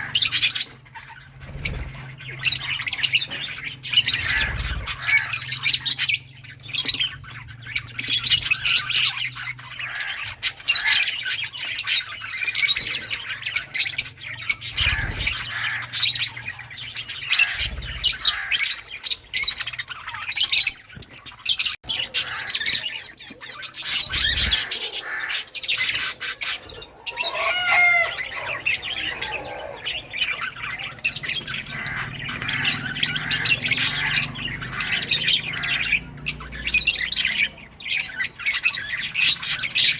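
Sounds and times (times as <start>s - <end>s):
lovebirds chirping and squawking: 0.0s - 39.9s.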